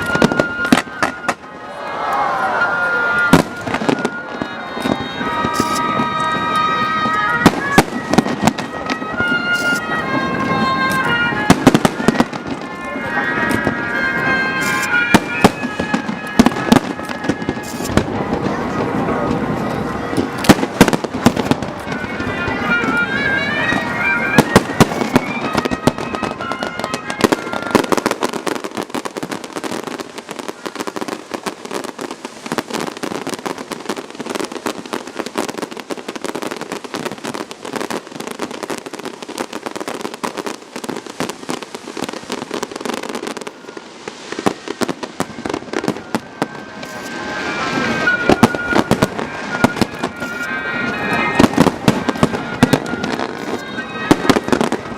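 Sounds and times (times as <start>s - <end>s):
rising whistling tones: 0.0s - 18.0s, 44.6s - 54.9s
fireworks bangs and crackling: 0.0s - 54.9s.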